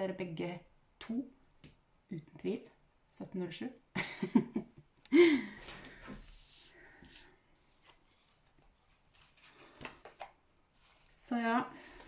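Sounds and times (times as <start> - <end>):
cards shuffling: 5.6 - 12.0.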